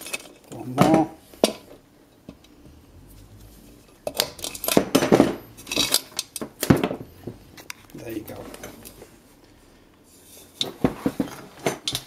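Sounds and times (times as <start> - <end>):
metallic clicks and clinks: 4.1 - 6.5.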